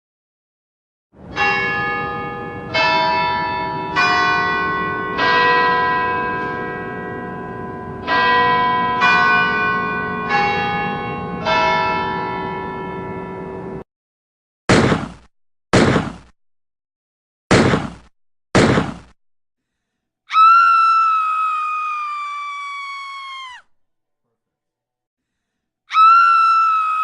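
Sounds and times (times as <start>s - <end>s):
church bells ringing: 1.2s - 13.8s.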